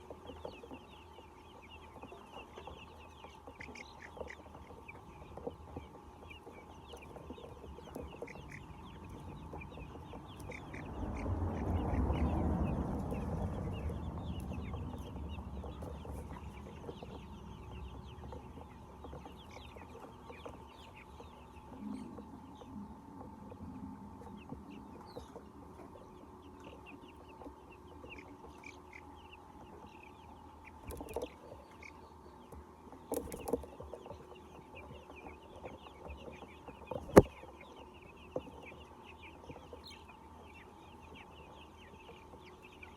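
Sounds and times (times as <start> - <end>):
hens clucking and chirping: 0.0 - 42.9
low rumble: 7.9 - 26.7.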